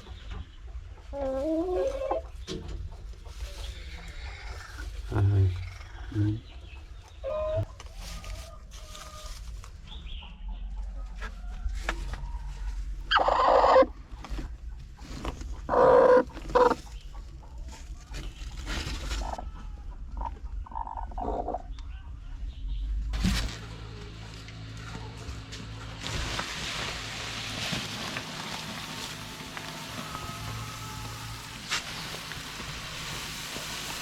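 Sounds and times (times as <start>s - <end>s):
chickens clucking and calling: 0.0s - 34.0s
low rumble: 19.1s - 33.2s.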